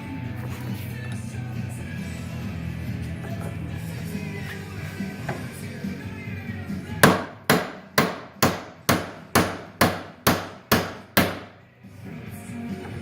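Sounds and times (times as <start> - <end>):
background music: 0.0 - 13.0
hammer striking metal punch: 7.0 - 11.6.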